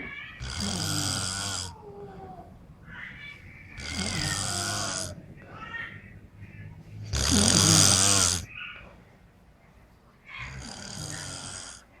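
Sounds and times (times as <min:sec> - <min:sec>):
person snoring: 0:00.4 - 0:01.7, 0:03.8 - 0:05.2, 0:07.1 - 0:08.5.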